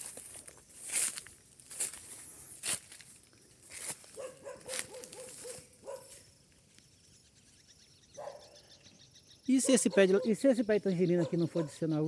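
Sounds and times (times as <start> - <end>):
footsteps through vegetation: 0.0 - 6.9
dog barking: 4.2 - 6.2, 8.2 - 8.6, 9.6 - 10.4, 11.2 - 11.9.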